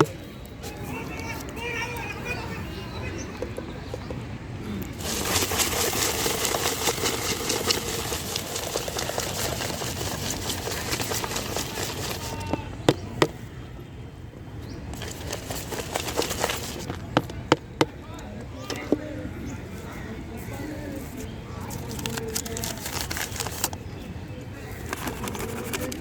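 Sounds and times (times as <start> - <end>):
puffed rice rattling in metal container: 5.0 - 12.5, 15.0 - 16.9, 21.8 - 23.8.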